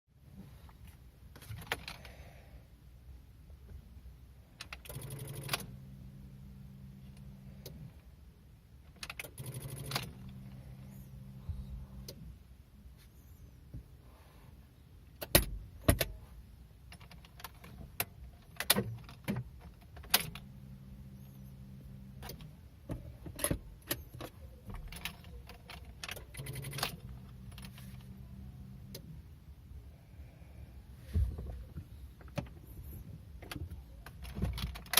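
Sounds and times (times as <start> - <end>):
low electric hum: 0.2 - 34.9
car keys jangling: 16.9 - 20.4, 22.2 - 28.1, 32.2 - 34.9.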